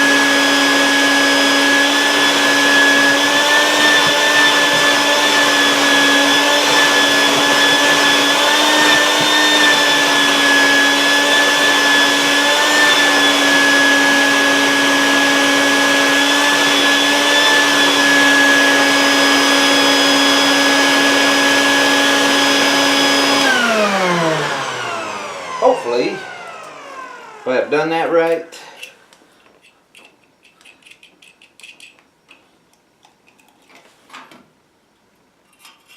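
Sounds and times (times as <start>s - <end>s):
electric motor whining: 0.0s - 27.6s.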